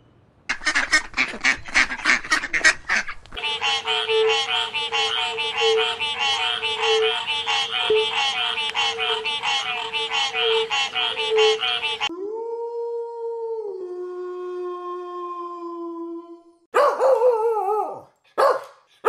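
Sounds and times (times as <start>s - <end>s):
rapid repeated animal calls: 0.5s - 12.1s.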